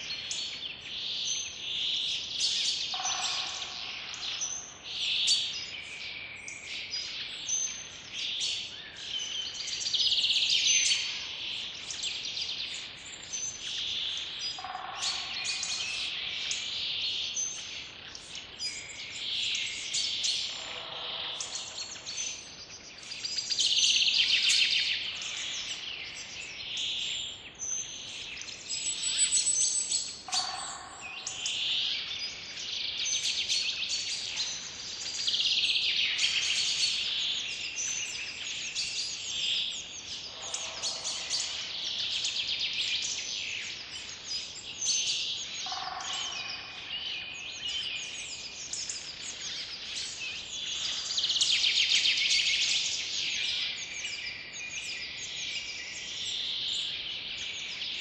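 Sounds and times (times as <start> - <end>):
songbirds chirping and singing: 0.0 - 58.0
lower bird call: 40.3 - 41.8.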